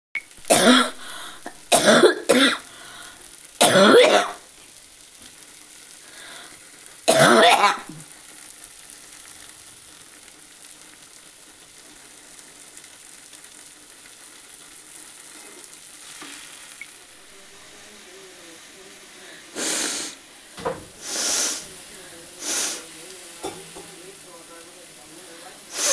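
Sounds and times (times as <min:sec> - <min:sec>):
person coughing and sneezing: 0:00.5 - 0:01.0, 0:01.7 - 0:02.7, 0:03.6 - 0:04.4, 0:07.1 - 0:08.0.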